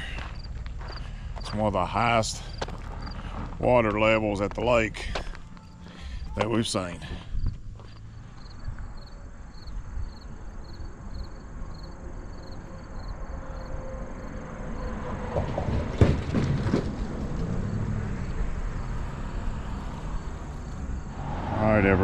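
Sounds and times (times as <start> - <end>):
vehicle passing on road: 0.0 - 22.0
faint insect chirping: 5.4 - 15.0, 17.6 - 21.3.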